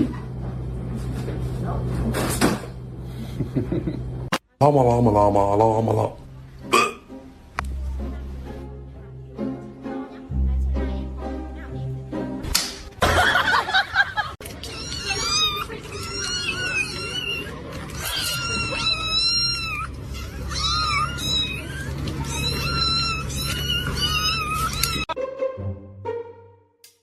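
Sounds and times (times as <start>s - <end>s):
cat meowing: 14.6s - 25.2s.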